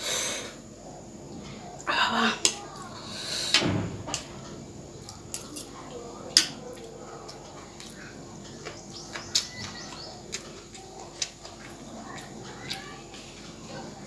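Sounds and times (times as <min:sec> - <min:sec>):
utensils tapping against a plate: 0:05.3 - 0:12.9
faint bird chirps: 0:08.0 - 0:10.4.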